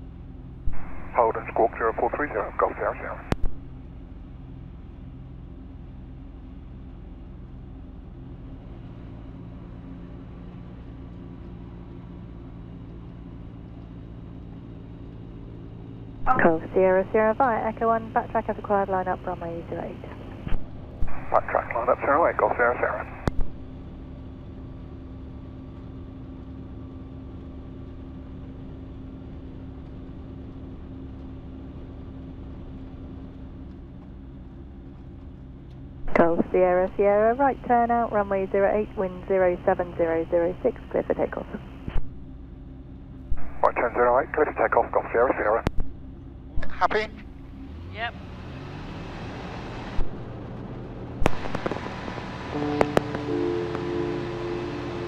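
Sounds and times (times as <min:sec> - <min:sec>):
aircraft engine idling: 0:00.0 - 0:48.1, 0:51.0 - 0:55.0.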